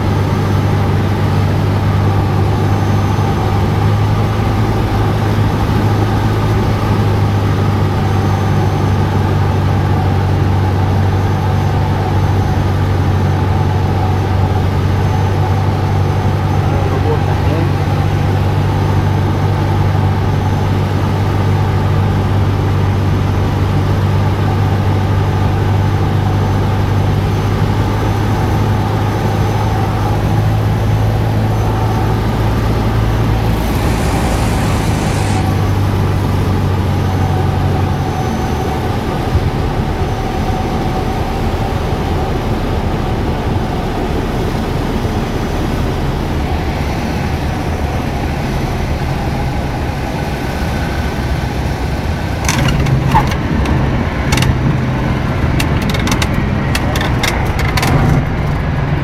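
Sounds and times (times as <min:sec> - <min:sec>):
propeller plane engine droning: 0:00.0 - 0:59.0
brief hiss: 0:33.5 - 0:35.7.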